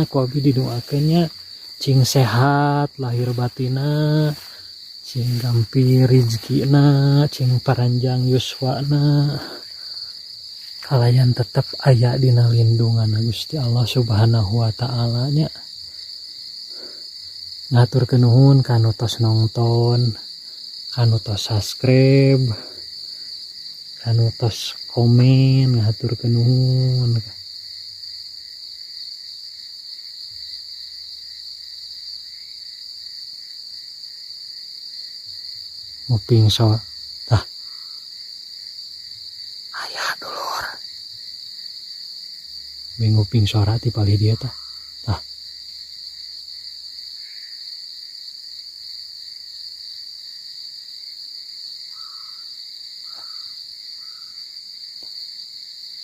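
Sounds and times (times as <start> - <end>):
crickets trilling: 0.0 - 56.0
faint pulsing insect chirr: 0.0 - 56.0
faint bird calls: 51.9 - 54.4.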